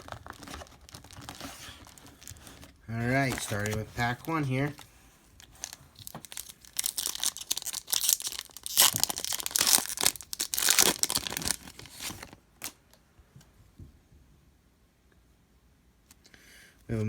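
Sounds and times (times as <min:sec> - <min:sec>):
foil pack tearing and crinkling: 0:00.0 - 0:04.8, 0:05.4 - 0:12.8.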